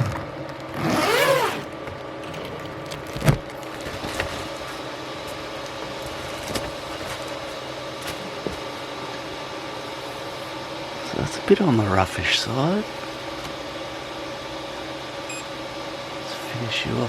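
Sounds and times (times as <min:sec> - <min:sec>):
stepper motors whirring: 0:00.0 - 0:04.8
fans and motors humming: 0:00.0 - 0:17.0.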